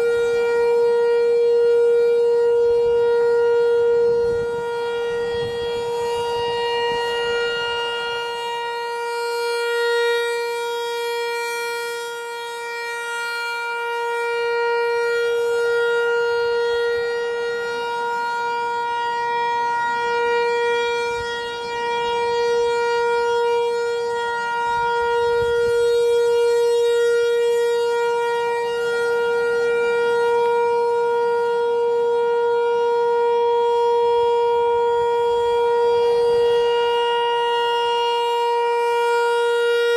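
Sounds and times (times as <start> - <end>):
warning siren steady tone: 0.0 - 39.9.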